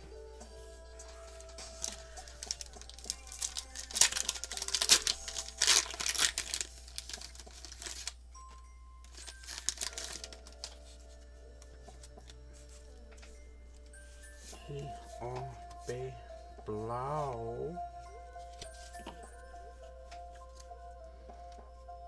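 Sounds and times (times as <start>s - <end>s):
background music with held notes: 0.0s - 22.0s
foil wrapper crinkling and tearing: 1.5s - 8.2s, 9.1s - 10.9s.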